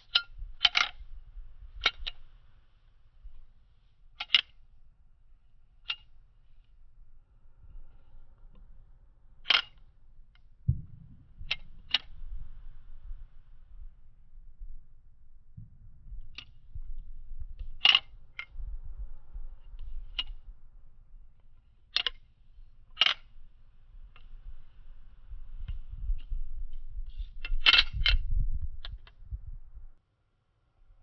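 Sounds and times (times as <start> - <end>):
low handling rumble: 6.8 - 21.6.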